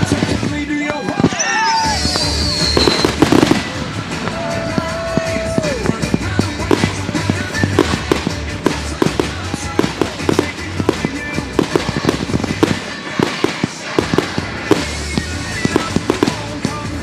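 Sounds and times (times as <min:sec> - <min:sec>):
fireworks banging: 0:02.4 - 0:04.6, 0:06.4 - 0:17.0.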